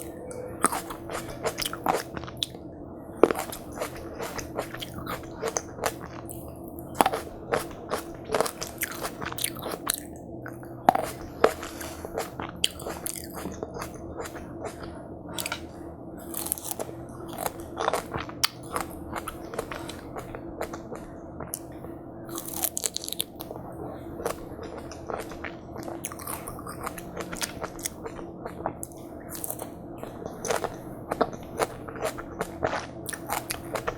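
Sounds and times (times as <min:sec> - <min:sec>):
chewing watermelon: 0:00.0 - 0:02.6, 0:03.2 - 0:33.9.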